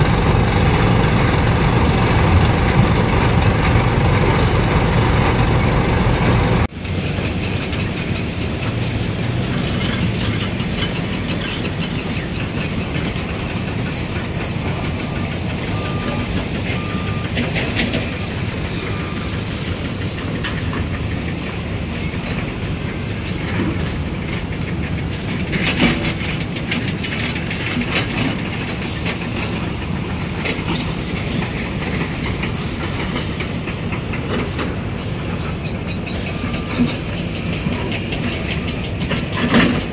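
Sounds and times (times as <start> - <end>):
mechanical rumble: 0.0 - 17.0
low engine hum: 0.0 - 19.5
sharp clicks and clanks: 0.0 - 39.9.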